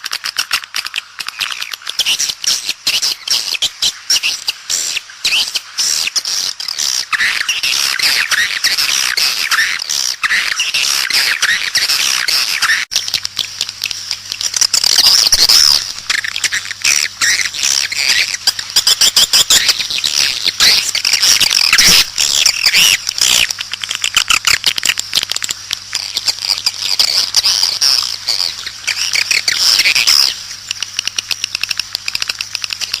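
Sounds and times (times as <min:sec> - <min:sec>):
swiftlets chirping and twittering: 0:00.0 - 0:33.0
steady low hum: 0:00.9 - 0:33.0
rapid clicking: 0:12.9 - 0:33.0.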